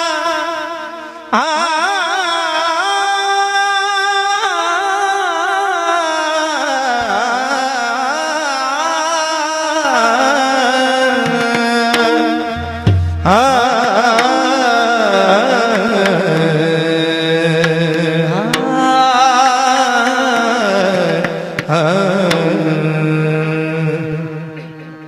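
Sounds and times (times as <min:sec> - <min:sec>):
person singing devotional song: 0:00.0 - 0:25.0
sustained accompaniment: 0:10.9 - 0:25.0
low drum stroke: 0:12.0 - 0:13.6.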